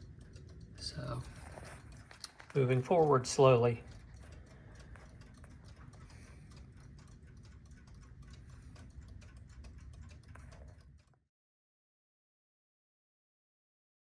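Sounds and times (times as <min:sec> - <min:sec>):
mechanical clock ticking: 0:00.0 - 0:11.2.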